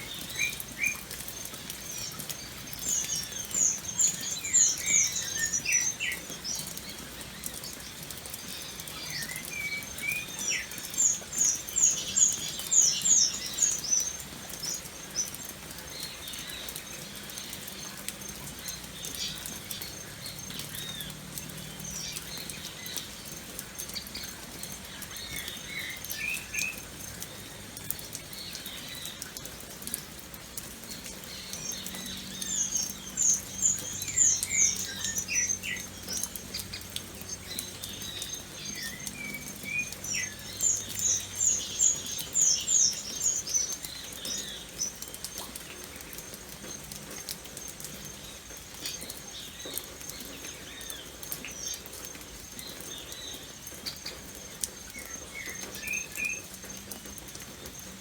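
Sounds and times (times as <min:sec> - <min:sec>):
birds chirping: 0:00.0 - 0:58.0
rain pattering: 0:00.0 - 0:58.0.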